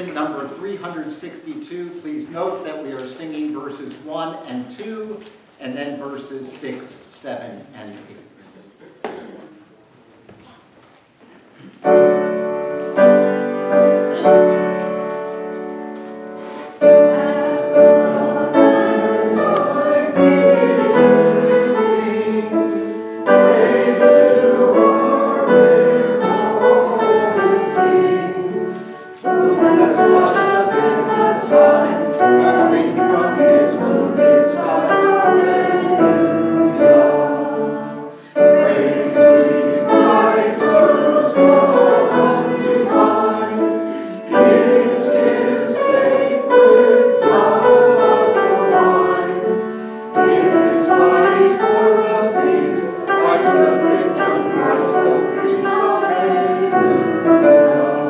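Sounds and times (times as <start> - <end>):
congregation singing a hymn: 11.8 - 58.0
keyboard chords: 11.9 - 58.0.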